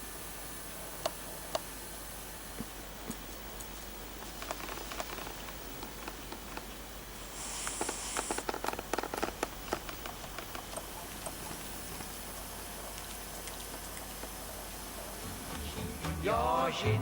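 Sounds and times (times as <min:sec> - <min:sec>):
cat snoring with crackles: 0:04.2 - 0:12.1.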